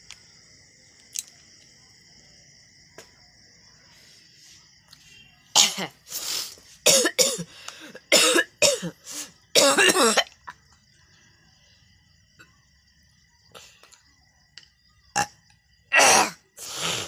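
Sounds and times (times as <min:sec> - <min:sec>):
person coughing: 0:06.9 - 0:09.0, 0:09.6 - 0:10.3, 0:16.0 - 0:16.4.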